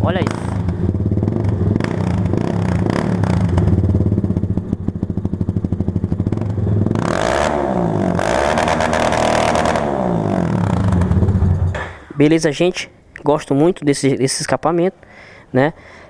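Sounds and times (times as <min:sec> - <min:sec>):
motorcycle engine idling and revving: 0:00.0 - 0:11.9.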